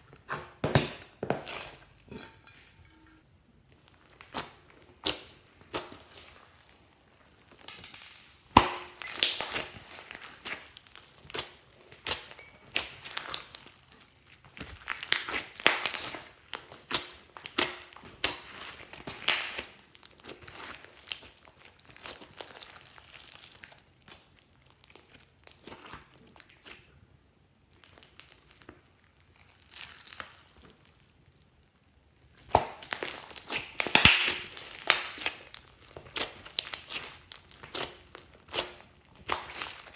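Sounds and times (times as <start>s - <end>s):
slime crackling and popping: 0.0s - 2.2s, 3.5s - 39.9s
slime squished by hand: 3.6s - 27.0s, 27.6s - 39.9s.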